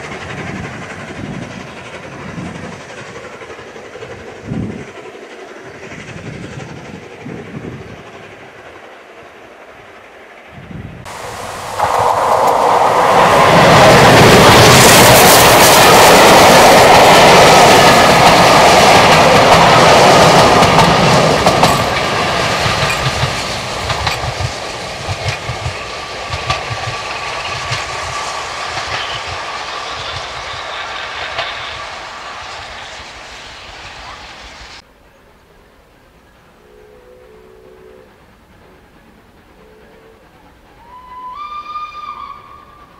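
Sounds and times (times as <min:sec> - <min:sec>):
steam train passing: 0:00.0 - 0:42.9
wheels clicking over rail joints: 0:11.1 - 0:31.6.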